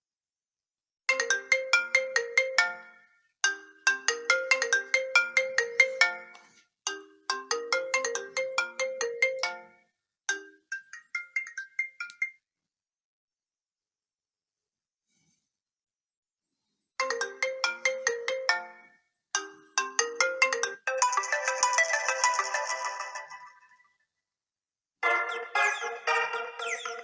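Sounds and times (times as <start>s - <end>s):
phone ringtone plucked notes: 1.1s - 12.4s, 17.0s - 23.8s.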